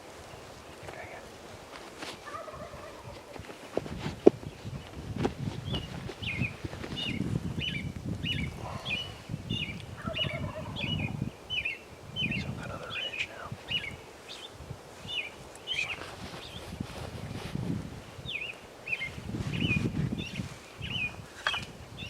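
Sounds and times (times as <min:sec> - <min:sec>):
crunching footsteps: 0:00.8 - 0:07.4, 0:14.1 - 0:21.8
bird chirping: 0:05.6 - 0:16.8, 0:18.2 - 0:22.0.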